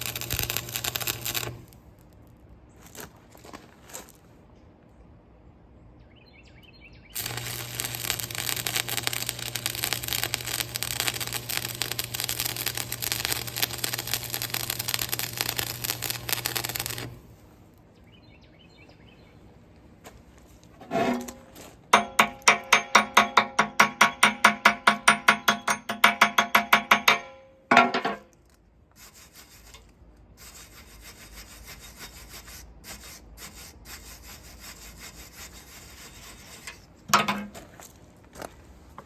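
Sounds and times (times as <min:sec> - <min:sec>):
electric arc welder buzzing: 0:00.0 - 0:02.1, 0:07.2 - 0:17.4.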